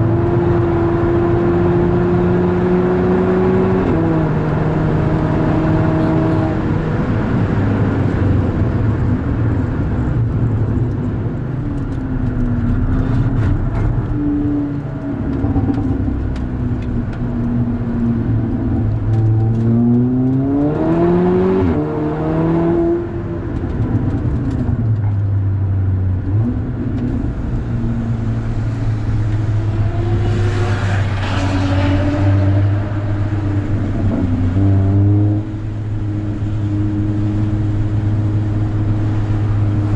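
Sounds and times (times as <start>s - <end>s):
car engine revving: 11.8s - 25.4s, 26.1s - 39.9s.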